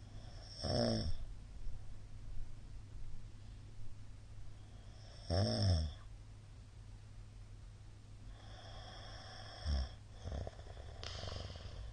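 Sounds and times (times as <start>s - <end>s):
man snoring: 0.2s - 1.2s, 4.8s - 6.0s, 8.3s - 11.9s
drawn-out breath: 10.6s - 11.9s.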